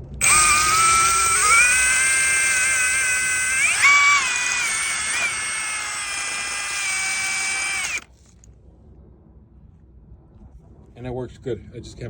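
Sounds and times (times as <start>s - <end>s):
impact driver motor whine: 0.1s - 8.1s.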